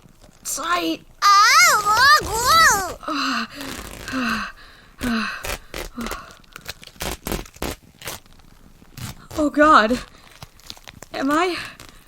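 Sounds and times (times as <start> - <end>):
person gasping and grunting: 1.2 - 3.0.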